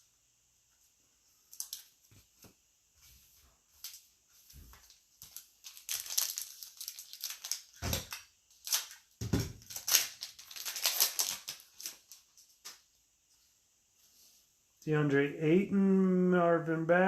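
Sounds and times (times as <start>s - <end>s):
plastic wrapper crinkling and tearing: 1.5s - 2.0s, 4.8s - 12.8s.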